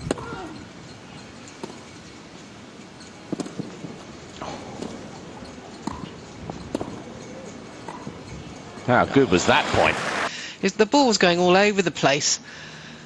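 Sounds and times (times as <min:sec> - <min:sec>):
ball bouncing: 0:00.0 - 0:00.6, 0:01.2 - 0:02.1, 0:03.0 - 0:08.8
racquets striking tennis ball: 0:00.0 - 0:08.9.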